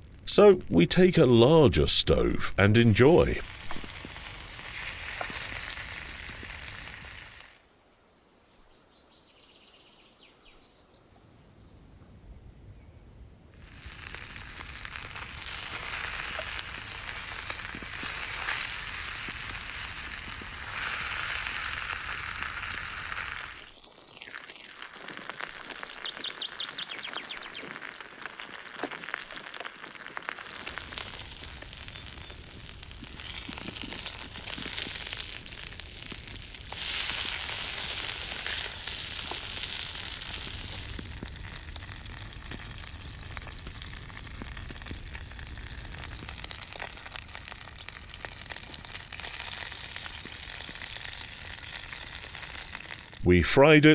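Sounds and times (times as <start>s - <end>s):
steaks sizzling in a pan: 3.4s - 7.6s, 13.6s - 26.3s, 27.0s - 53.1s.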